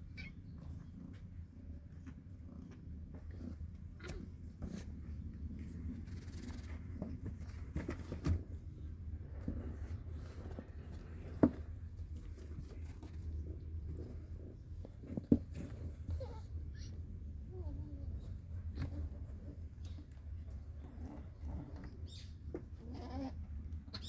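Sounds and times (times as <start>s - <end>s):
kittens scratching and rustling: 0.0s - 24.0s
low steady rumble: 0.0s - 24.0s.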